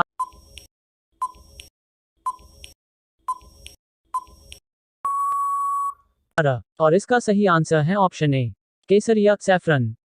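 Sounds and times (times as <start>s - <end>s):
electronic tick-beeps: 0.2s - 1.7s, 2.3s - 6.0s.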